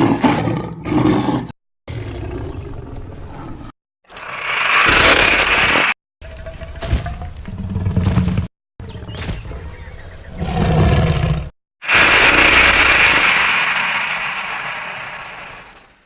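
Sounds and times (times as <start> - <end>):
low rumbling creature growl: 7.5 - 15.9
long loud creature roar: 10.4 - 15.7.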